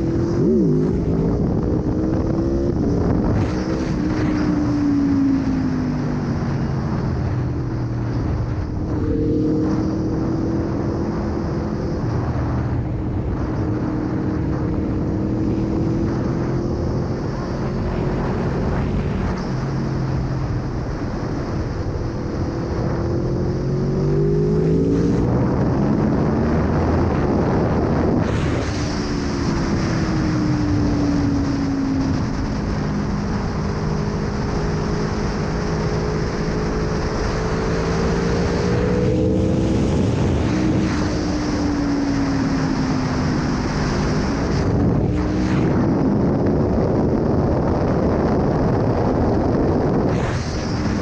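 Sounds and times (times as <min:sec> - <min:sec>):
motorcycle engine revving: 0:00.0 - 0:51.0.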